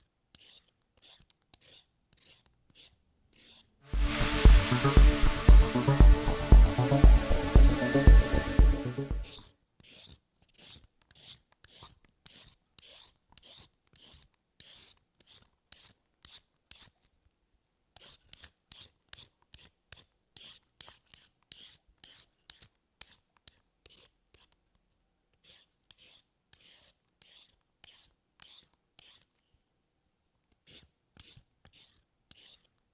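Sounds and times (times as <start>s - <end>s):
short scraping strokes: 4.0s - 9.3s.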